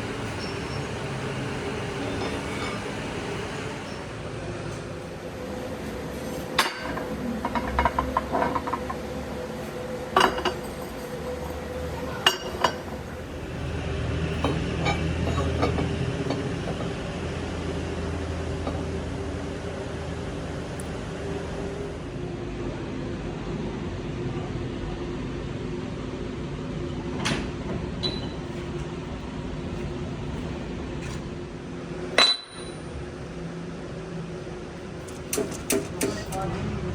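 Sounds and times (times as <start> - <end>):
workshop machinery hum: 0.0 - 36.9
metal tools clinking and knocking: 10.2 - 11.2, 14.4 - 16.8.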